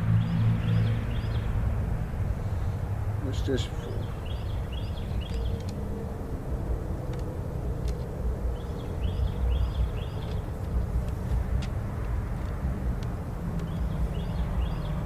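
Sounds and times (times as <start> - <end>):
small bird chirping: 3.9 - 5.8, 8.5 - 11.3, 13.6 - 15.0
faint clicks: 5.2 - 5.8, 7.0 - 8.1.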